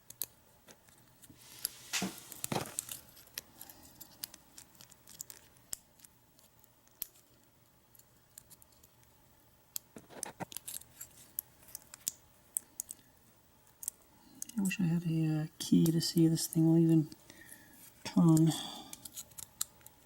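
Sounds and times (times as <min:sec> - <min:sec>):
lock picks clicking and scraping: 0:18.9 - 0:19.8.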